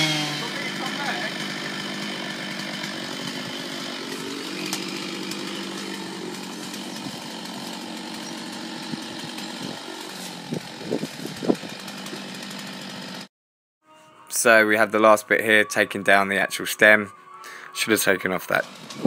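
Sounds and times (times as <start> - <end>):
chainsaw cutting wood: 0.0 - 13.3, 18.5 - 19.0.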